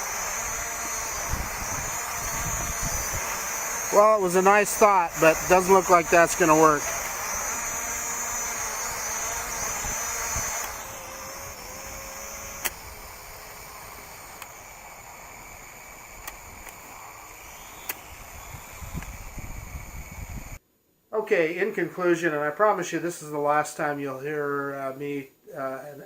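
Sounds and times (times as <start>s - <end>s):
drone propellers whirring: 0.0s - 20.6s
faint hiss: 0.0s - 26.0s.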